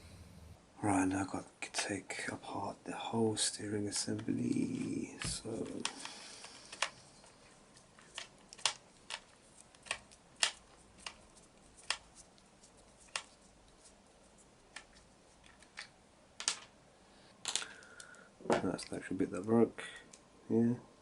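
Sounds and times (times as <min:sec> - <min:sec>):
plastic parts clicking: 0:03.9 - 0:07.4, 0:08.0 - 0:11.2, 0:14.7 - 0:16.7.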